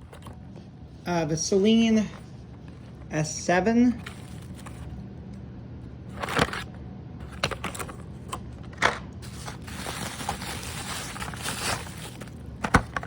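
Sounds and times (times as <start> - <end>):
low steady hum: 0.0 - 13.0
plastic packaging crinkling and clicking: 4.0 - 5.0, 6.1 - 13.0.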